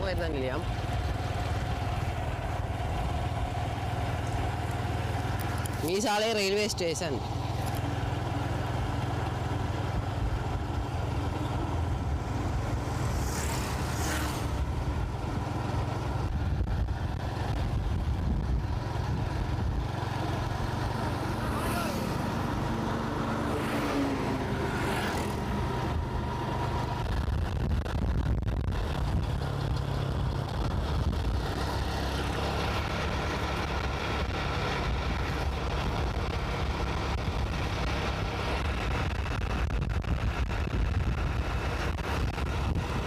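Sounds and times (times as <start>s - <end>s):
motorcycle engine rumble: 0.0s - 43.0s
wind rush on microphone: 9.8s - 20.4s, 23.4s - 43.0s.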